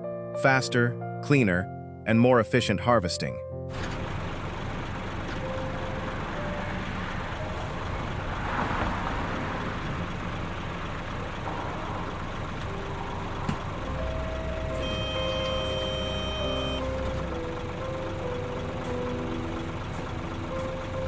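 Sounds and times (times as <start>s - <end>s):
combine harvester running: 3.7s - 21.0s
rushing noise: 4.8s - 17.6s.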